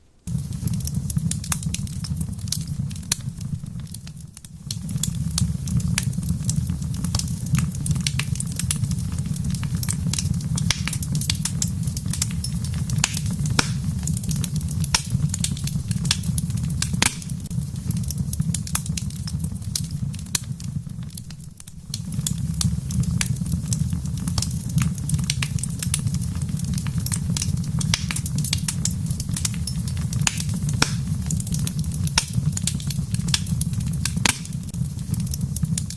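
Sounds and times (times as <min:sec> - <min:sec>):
wood fire crackling: 0:00.0 - 0:35.9
sharp pops: 0:13.0 - 0:13.9, 0:16.9 - 0:17.4, 0:30.2 - 0:31.2, 0:34.1 - 0:34.7.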